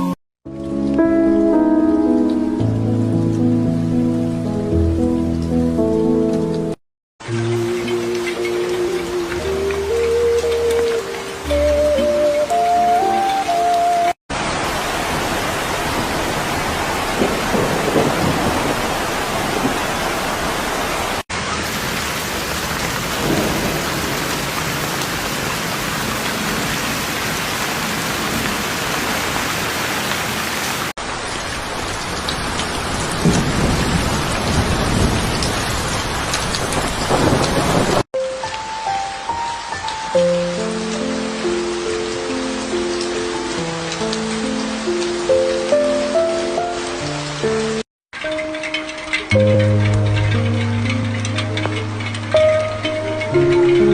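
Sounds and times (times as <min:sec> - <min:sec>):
music: 0:00.0 - 0:14.2, 0:38.2 - 0:53.9
heavy rain: 0:00.5 - 0:53.9
thunder rumbles: 0:14.5 - 0:29.5, 0:31.4 - 0:38.0.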